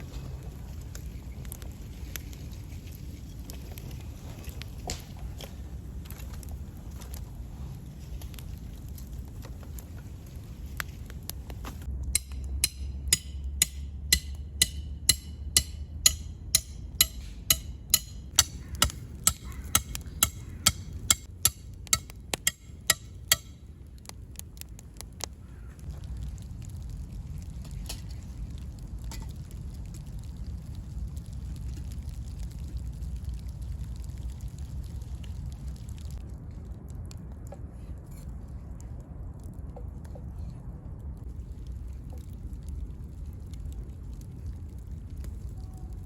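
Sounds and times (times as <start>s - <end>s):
low steady rumble: 0.0s - 46.0s.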